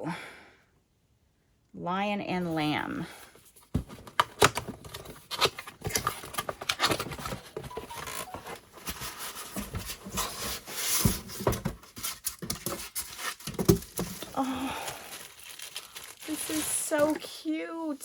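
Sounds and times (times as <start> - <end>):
cardboard box rustling and scraping: 3.5 - 14.4.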